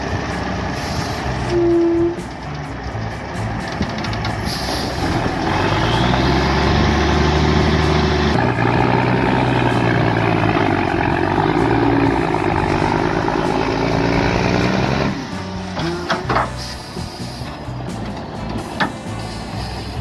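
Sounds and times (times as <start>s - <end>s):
heavy diesel engine under load: 0.0s - 20.0s.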